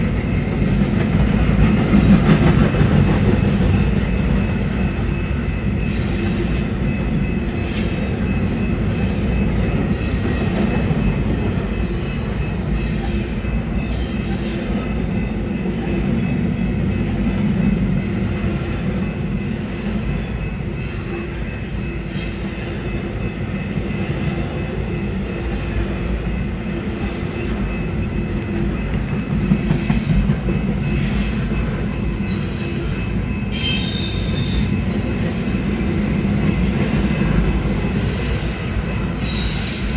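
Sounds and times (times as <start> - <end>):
train wheels rumbling on rail: 0.0 - 39.9
high-pitched wheel squeals: 0.6 - 1.4, 38.0 - 39.9.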